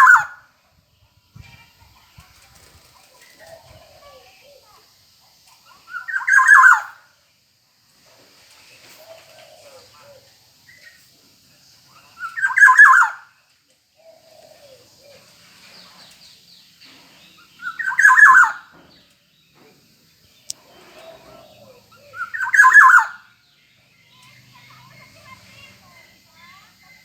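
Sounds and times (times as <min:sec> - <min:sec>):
oriole calling: 0:00.0 - 0:00.5, 0:05.6 - 0:07.1, 0:11.9 - 0:13.3, 0:17.4 - 0:18.8, 0:20.5 - 0:23.4.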